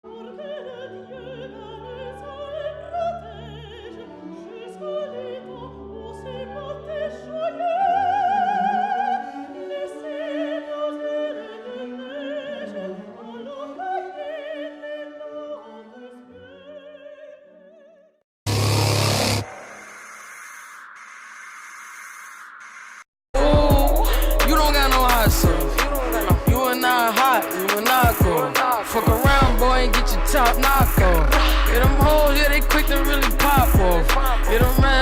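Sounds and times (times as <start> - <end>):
loud burst of noise: 18.5 - 21.1
operatic singing with vibrato: 23.4 - 35.0.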